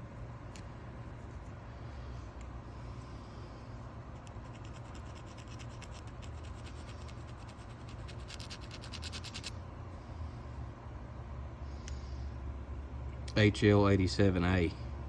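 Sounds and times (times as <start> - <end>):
steady low hum: 0.0 - 15.0
small scratching clicks: 4.2 - 9.6.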